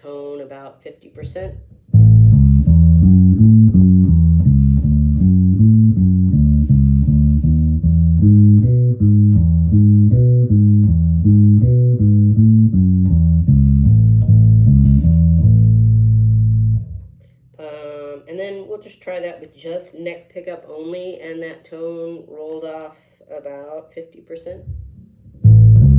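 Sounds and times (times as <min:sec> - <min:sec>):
electric bass plucked notes: 0:01.4 - 0:17.2, 0:24.6 - 0:25.9.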